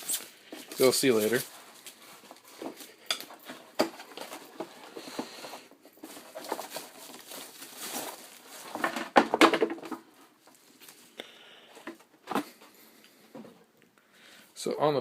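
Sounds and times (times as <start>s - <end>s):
packaging rustling: 0.0s - 11.1s.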